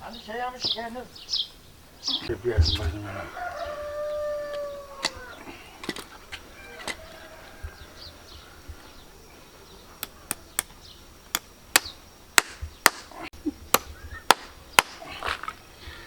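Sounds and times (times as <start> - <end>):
hammer blows: 2.2 - 4.0.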